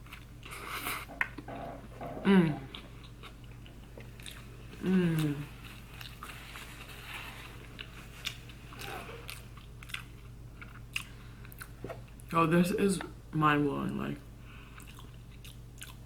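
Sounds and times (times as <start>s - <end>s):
short hummed vocal sound: 0.8s - 3.0s, 4.7s - 5.6s
close chewing with mouth clicks: 2.7s - 12.3s, 14.6s - 16.0s.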